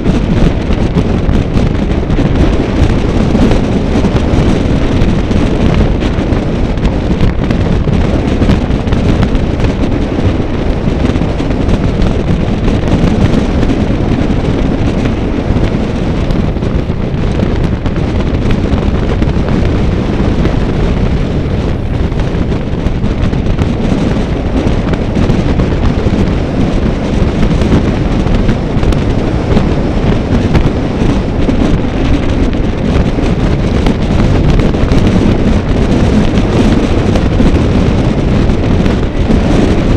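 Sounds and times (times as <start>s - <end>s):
wind buffeting microphone: 0.0s - 39.9s.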